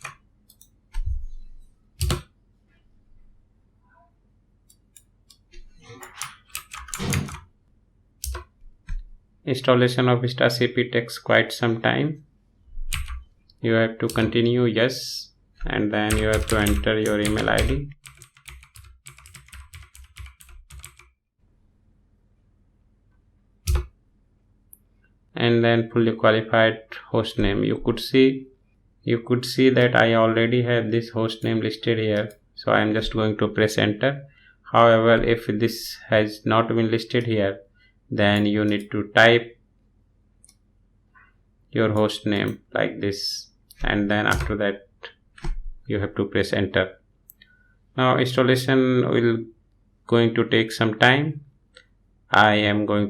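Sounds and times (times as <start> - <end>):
typing on computer keyboard: 6.0 - 7.4, 12.9 - 13.2, 16.1 - 21.2.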